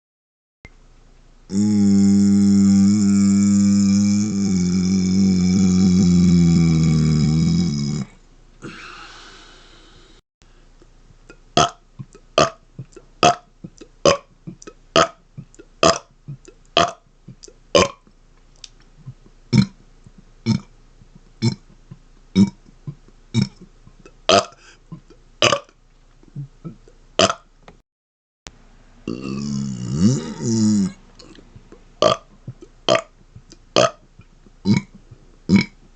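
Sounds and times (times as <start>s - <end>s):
man burping: 1.5s - 8.9s, 11.6s - 13.4s, 20.4s - 20.7s, 21.4s - 21.7s, 22.4s - 22.7s, 23.3s - 23.7s, 24.3s - 25.7s, 29.1s - 31.4s, 32.0s - 32.3s, 33.8s - 34.0s, 34.6s - 35.8s.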